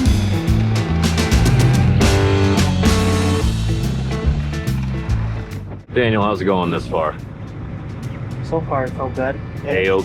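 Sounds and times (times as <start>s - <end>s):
background music with beat: 0.0s - 5.9s
bass line: 0.0s - 5.9s.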